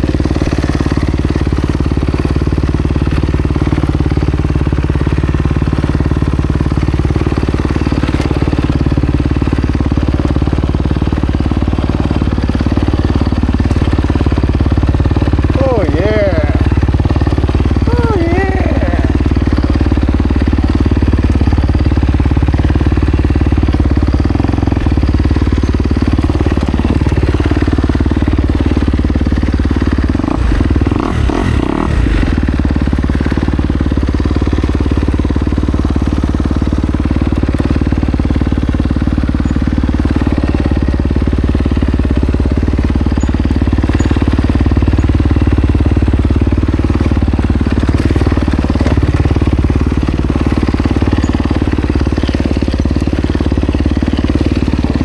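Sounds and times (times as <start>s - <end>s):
two-stroke dirt bike engine: 0.0s - 55.0s.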